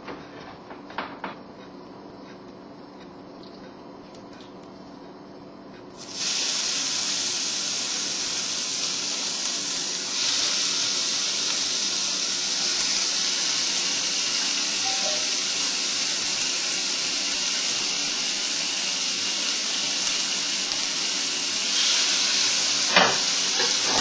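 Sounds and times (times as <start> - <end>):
steak sizzling on a grill: 6.0 - 24.0.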